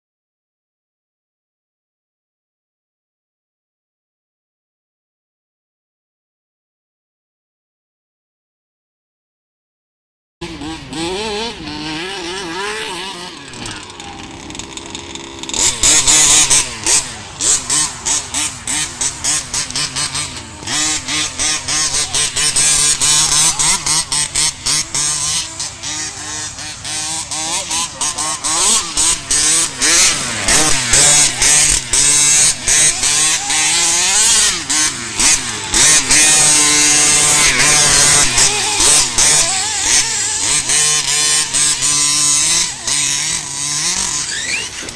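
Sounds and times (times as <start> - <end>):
two-stroke engine revving: 10.4 - 44.9.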